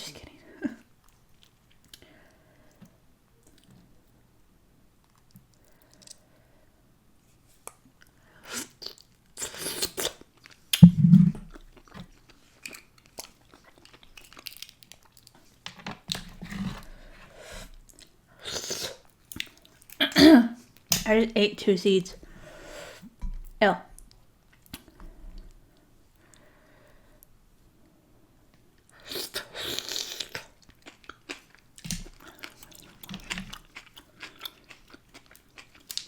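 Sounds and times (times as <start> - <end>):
chewing and crunching food: 1.0 - 4.0, 11.5 - 17.1, 19.0 - 20.0, 28.8 - 36.0
loud low thump: 10.8 - 11.4.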